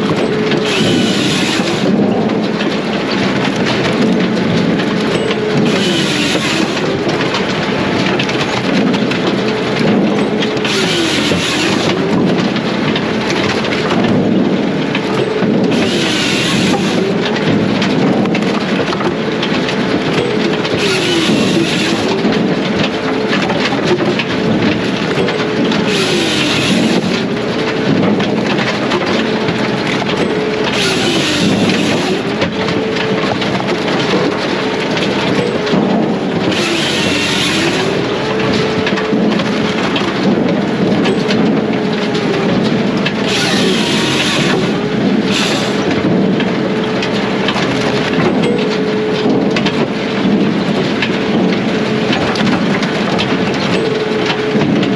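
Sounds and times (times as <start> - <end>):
diesel engine under load: 0.0 - 54.9.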